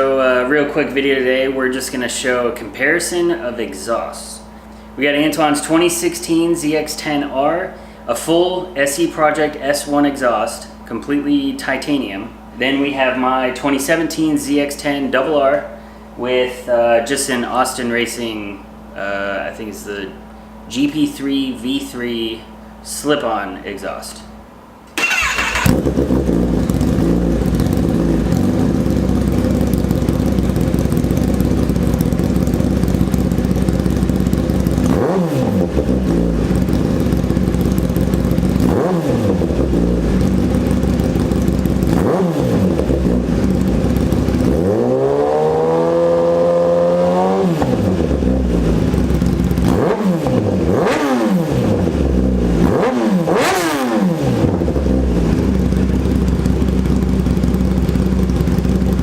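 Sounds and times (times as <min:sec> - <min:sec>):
motorcycle engine idling and revving: 0:25.0 - 0:59.0.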